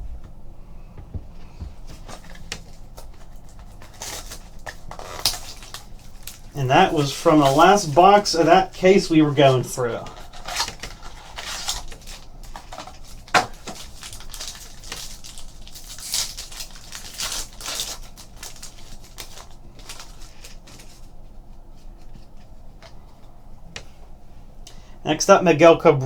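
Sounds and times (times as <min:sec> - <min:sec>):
card packaging crinkling: 0:01.7 - 0:21.2.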